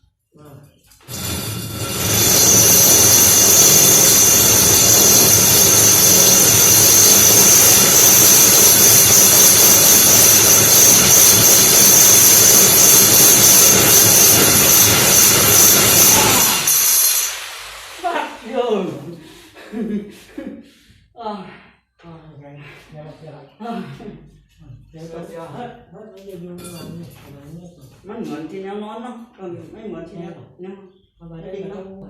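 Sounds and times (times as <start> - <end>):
electric drill boring into brick: 1.0 - 18.5.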